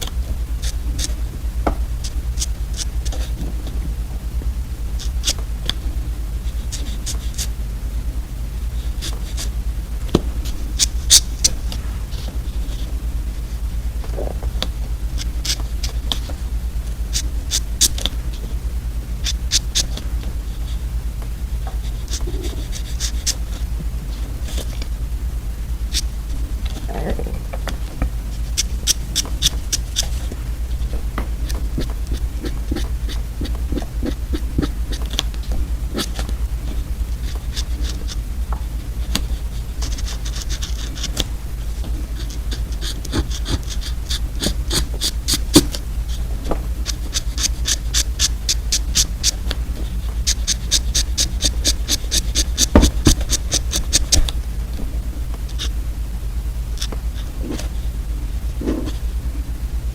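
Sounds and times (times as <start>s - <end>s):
steady low hum: 0.0s - 59.9s.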